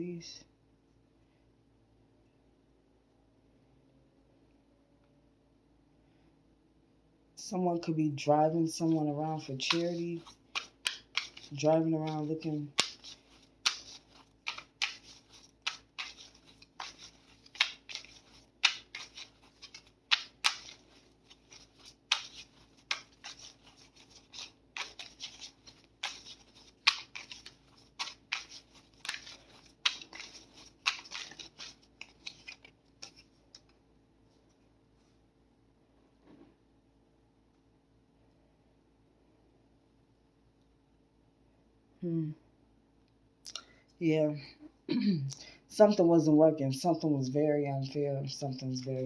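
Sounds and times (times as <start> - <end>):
cards being shuffled by hand: 8.6 - 34.6.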